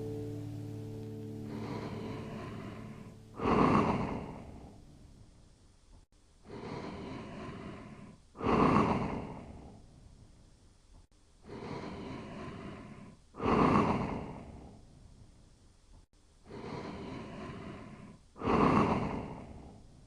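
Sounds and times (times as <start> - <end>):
soft breaths: 1.2 - 20.0
loud snoring: 1.5 - 4.6, 6.5 - 9.5, 11.5 - 14.6, 16.5 - 19.7.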